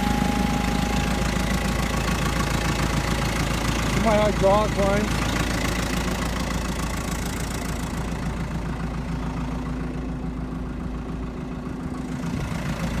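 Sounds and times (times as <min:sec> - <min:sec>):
steady hum: 0:00.0 - 0:02.4
backhoe engine idling: 0:00.0 - 0:13.0.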